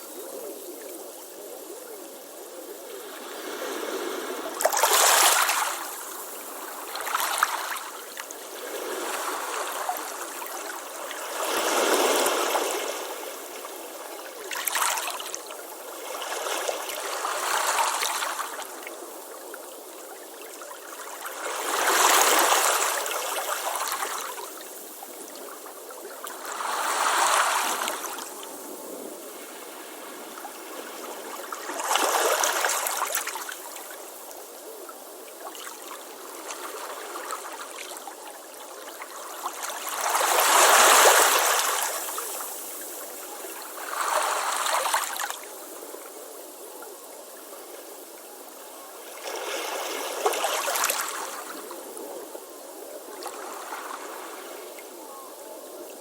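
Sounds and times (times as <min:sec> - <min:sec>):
ocean waves breaking on beach: 0:03.0 - 0:15.4, 0:26.4 - 0:33.5, 0:39.3 - 0:45.5.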